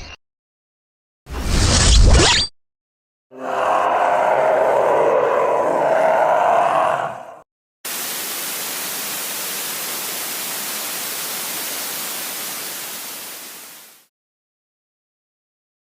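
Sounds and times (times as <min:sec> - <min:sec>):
tv static hiss: 0:07.9 - 0:14.1.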